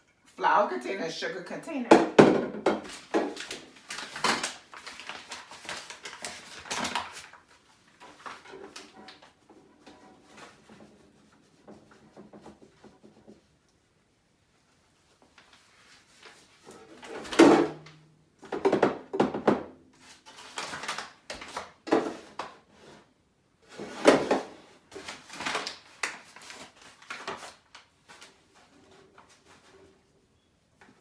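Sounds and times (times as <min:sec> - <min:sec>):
kitchen items knocking and clunking: 0:01.6 - 0:07.4, 0:16.8 - 0:19.8, 0:20.4 - 0:22.8, 0:23.7 - 0:27.5.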